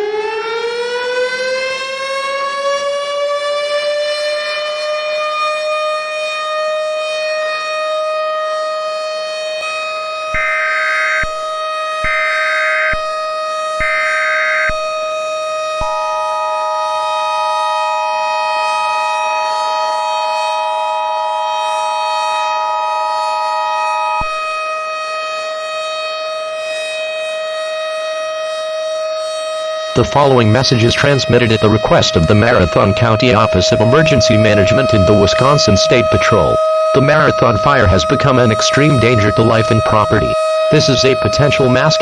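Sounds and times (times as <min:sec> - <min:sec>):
siren wailing: 0:00.0 - 0:42.0.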